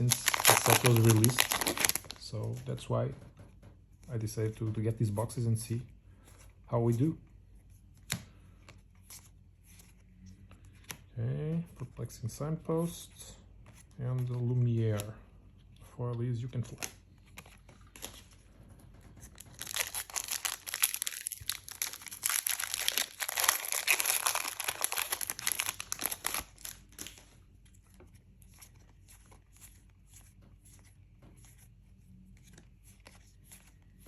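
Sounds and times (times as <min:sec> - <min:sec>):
foil wrapper tearing and crinkling: 0:00.0 - 0:02.2, 0:19.4 - 0:27.2.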